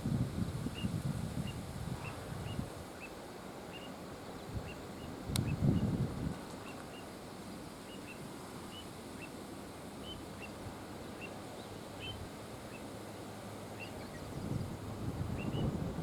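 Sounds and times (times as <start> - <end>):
river noise: 0.0 - 16.0
wind: 0.0 - 16.0
plovers giving high alarm calls: 12.0 - 12.9.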